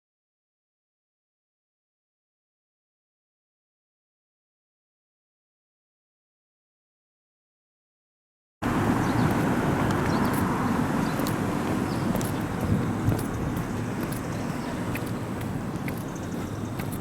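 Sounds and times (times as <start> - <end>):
steady low rumble: 8.6 - 17.0
light clicks: 11.1 - 11.4, 12.1 - 17.0.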